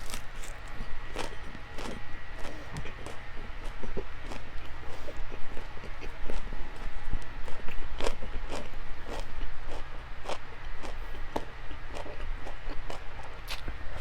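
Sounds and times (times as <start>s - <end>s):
person chewing and eating: 0.0s - 14.0s
steady low hum: 0.0s - 14.0s.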